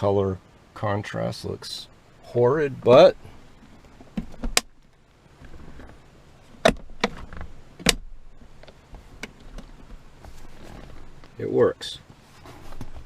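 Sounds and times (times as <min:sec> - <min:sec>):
console lid latch clicking: 0:06.6 - 0:08.1.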